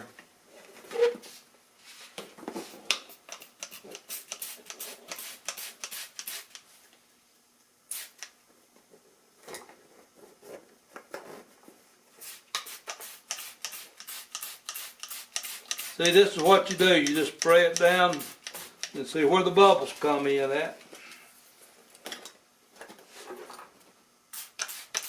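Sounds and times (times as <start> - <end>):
spray bottle spritzing: 3.1 - 6.6, 7.9 - 8.3, 12.2 - 18.9, 24.3 - 25.0.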